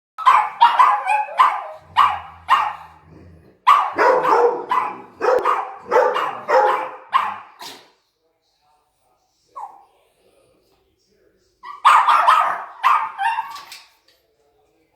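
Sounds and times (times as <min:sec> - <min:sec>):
small dogs barking: 0:00.2 - 0:07.9, 0:11.6 - 0:13.7.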